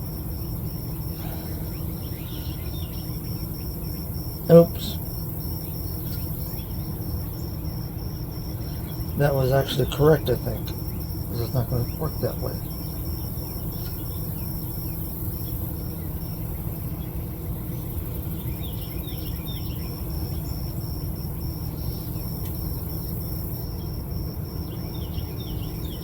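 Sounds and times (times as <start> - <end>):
insects chirping: 0.0 - 26.0
low background rumble: 0.0 - 26.0
bird chirps: 1.2 - 7.1.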